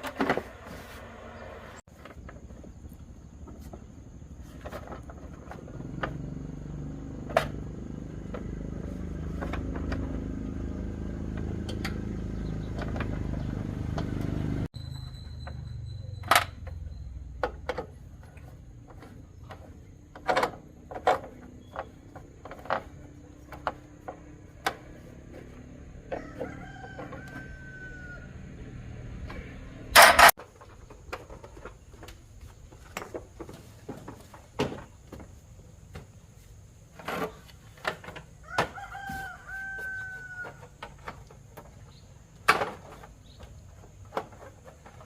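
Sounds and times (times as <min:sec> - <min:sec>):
rooster crowing: 0:26.0 - 0:29.1, 0:38.4 - 0:40.8.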